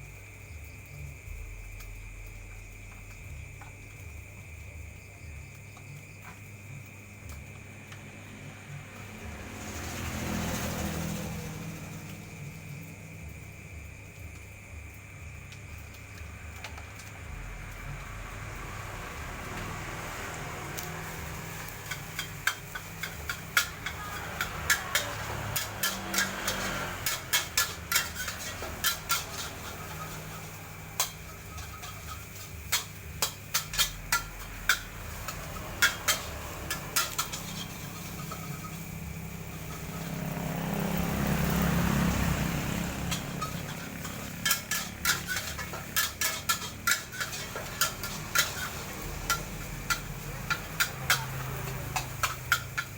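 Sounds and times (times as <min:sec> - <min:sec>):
metal spatula scraping a wok: 0:08.9 - 0:12.6, 0:17.9 - 0:52.9.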